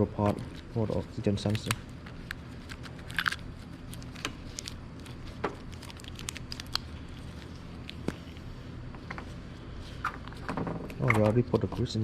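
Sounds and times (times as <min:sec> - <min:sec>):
packaging crinkling: 0:00.0 - 0:08.3
steady low hum: 0:00.0 - 0:12.0.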